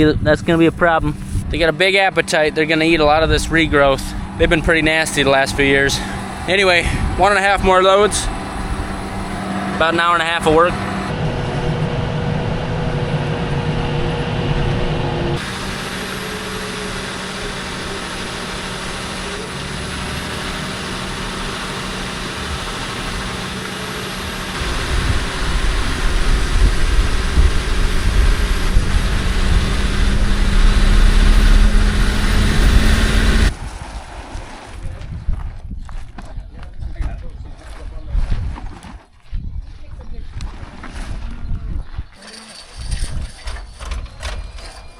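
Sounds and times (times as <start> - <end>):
farm machinery engines running: 0.0 - 34.7
deep loud rumble: 0.0 - 36.0.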